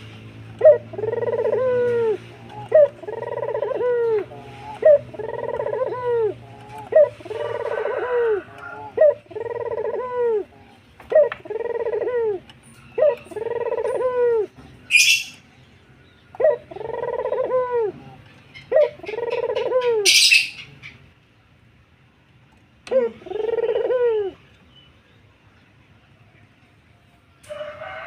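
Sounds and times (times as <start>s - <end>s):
dove cooing: 0.0s - 15.4s, 16.3s - 21.0s, 22.8s - 24.4s.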